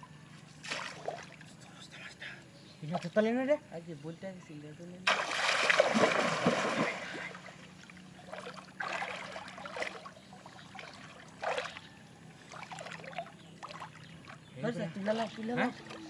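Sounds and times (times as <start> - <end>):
water splashing and sloshing: 0.6 - 1.6, 5.0 - 16.0.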